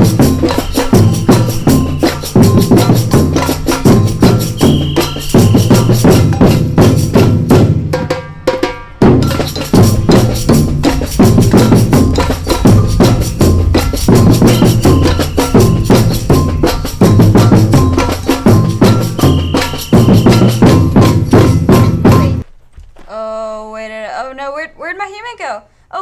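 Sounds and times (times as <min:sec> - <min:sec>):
bass line: 0:00.0 - 0:07.3, 0:09.2 - 0:22.4
drum and percussion music: 0:00.0 - 0:22.4.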